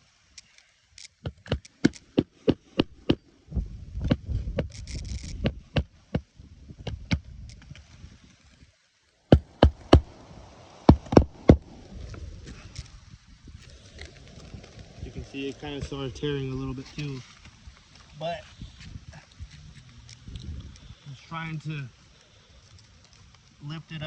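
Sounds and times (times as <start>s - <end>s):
rough scraping: 4.2s - 5.7s, 9.3s - 23.7s.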